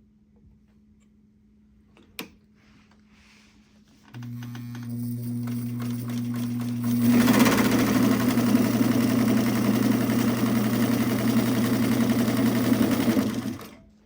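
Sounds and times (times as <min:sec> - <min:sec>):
sewing machine motor humming: 0:04.1 - 0:13.8
sewing needle mechanism clatter: 0:04.2 - 0:13.8.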